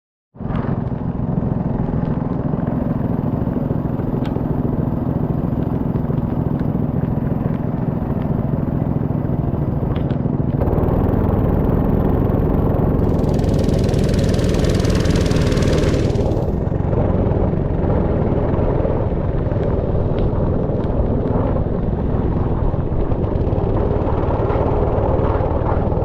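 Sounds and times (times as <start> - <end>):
go-kart engine running: 0.4 - 26.0
sharp clicks: 9.9 - 16.7.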